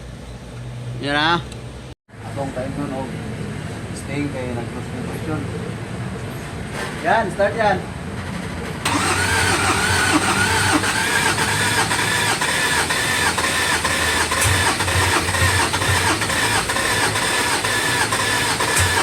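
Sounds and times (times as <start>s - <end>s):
diesel engine cranking: 8.8s - 19.0s.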